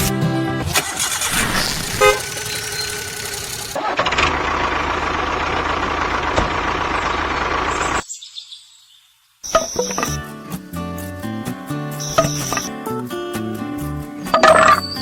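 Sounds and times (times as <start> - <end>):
music: 0.0 - 0.8, 9.6 - 15.0
vehicle engine humming: 0.0 - 8.0, 12.0 - 12.7.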